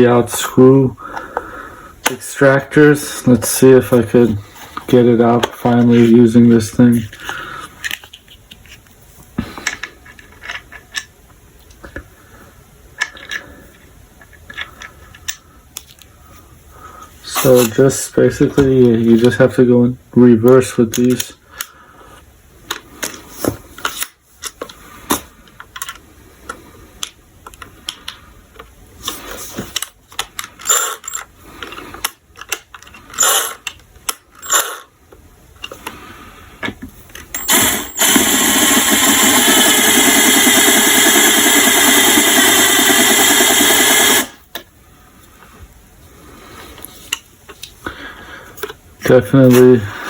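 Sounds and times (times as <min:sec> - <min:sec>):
power drill running: 0:37.4 - 0:44.4.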